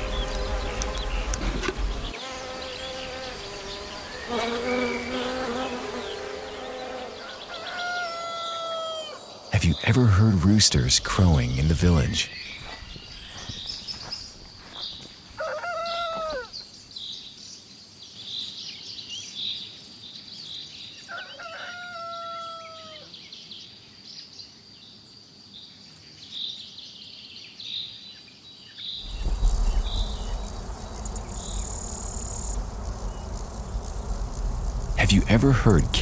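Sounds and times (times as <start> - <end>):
small birds chirping: 0.0 - 15.2, 26.0 - 36.0
rooster crowing: 7.2 - 9.2, 15.3 - 16.5, 21.1 - 23.1
high insect-like tone: 29.0 - 36.0
steady rushing noise: 29.0 - 36.0.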